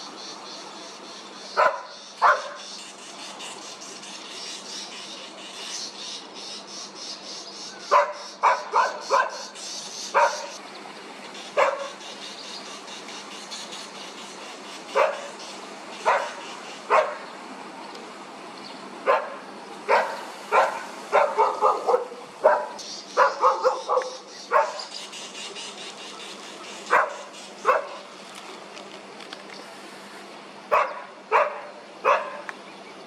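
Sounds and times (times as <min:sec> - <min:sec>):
animal barking calls: 0:01.5 - 0:02.9, 0:07.8 - 0:10.6, 0:11.4 - 0:12.9, 0:14.6 - 0:17.4, 0:19.0 - 0:28.2, 0:30.7 - 0:32.5.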